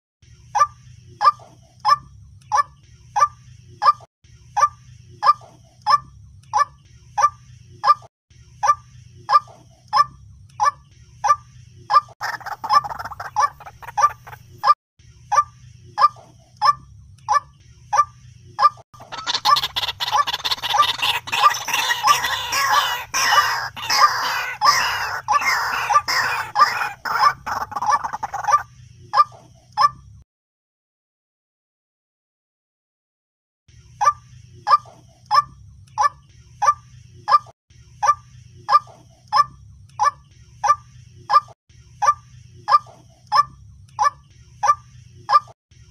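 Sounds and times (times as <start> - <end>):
waterhen calling: 12.2 - 14.8, 19.0 - 28.6.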